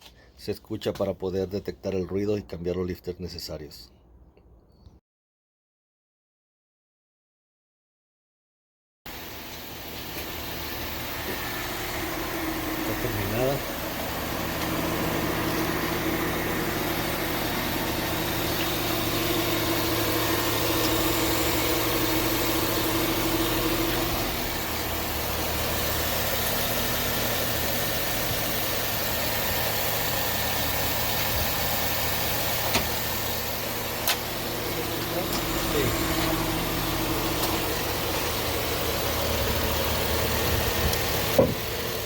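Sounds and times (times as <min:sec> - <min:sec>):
car engine idling: 0:09.1 - 0:42.0.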